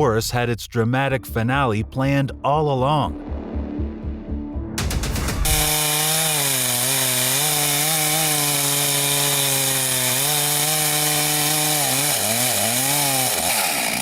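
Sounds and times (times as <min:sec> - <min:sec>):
chainsaw running at high revs: 0:05.4 - 0:14.0.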